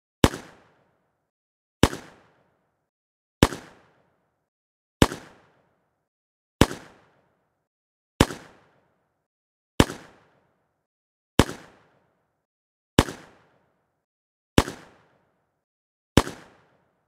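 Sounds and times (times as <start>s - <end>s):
handgun shots: 0.2s - 0.8s, 1.8s - 2.3s, 3.4s - 4.0s, 5.0s - 5.6s, 6.6s - 7.1s, 8.2s - 8.6s, 9.8s - 10.3s, 11.4s - 11.9s, 16.2s - 16.7s.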